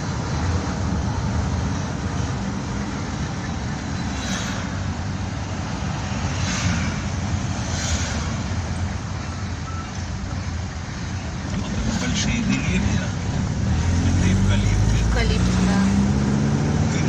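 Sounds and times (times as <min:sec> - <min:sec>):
vehicle road and engine rumble: 0:00.0 - 0:17.0
brief hissing: 0:04.0 - 0:04.9.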